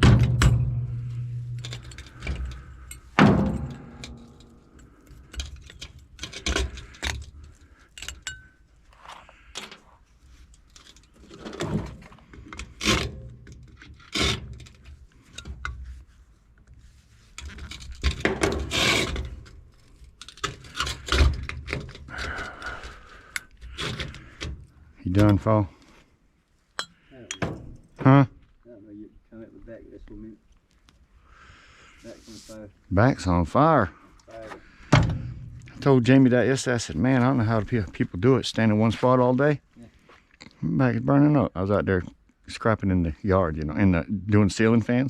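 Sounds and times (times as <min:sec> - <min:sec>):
metal parts and tools clinking: 0:00.0 - 0:11.7.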